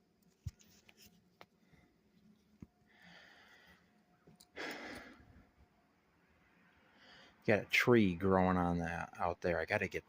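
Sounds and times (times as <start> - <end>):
person breathing out: 2.9 - 3.9, 4.5 - 5.4.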